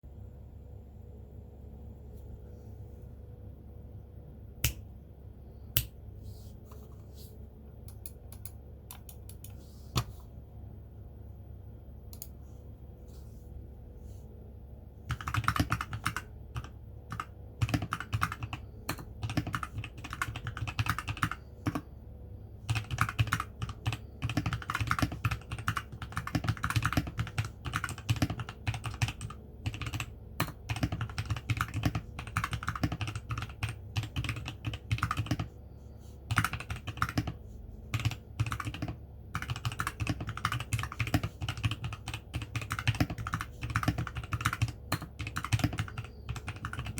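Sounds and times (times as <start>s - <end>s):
mechanical keyboard typing: 15.1s - 21.8s, 22.7s - 35.5s, 36.3s - 46.9s.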